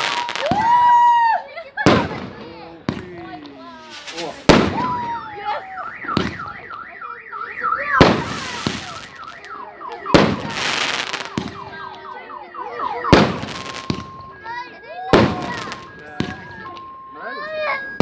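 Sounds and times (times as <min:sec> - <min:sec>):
firework shells whistling: 0:00.0 - 0:01.2, 0:01.8 - 0:18.0
firework bangs: 0:00.0 - 0:17.1
firework crackling: 0:00.0 - 0:18.0.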